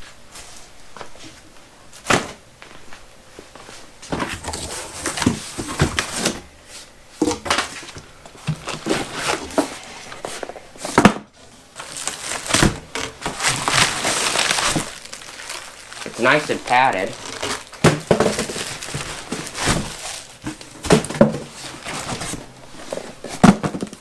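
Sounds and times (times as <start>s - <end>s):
cardboard box rustling and scraping: 4.1s - 6.4s, 7.2s - 11.0s, 11.8s - 24.0s.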